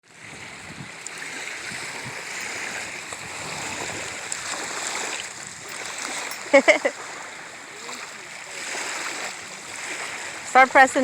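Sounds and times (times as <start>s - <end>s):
stream water rushing: 0.1s - 11.0s.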